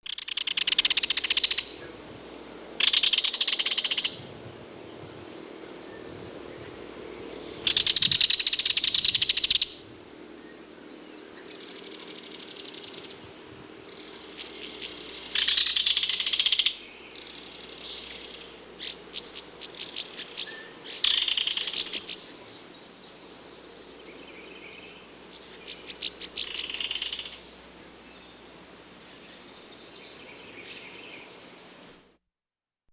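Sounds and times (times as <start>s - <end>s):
kingfisher rattle call: 0.0s - 1.8s, 2.8s - 4.2s, 7.6s - 9.8s, 15.2s - 16.8s, 19.9s - 22.2s.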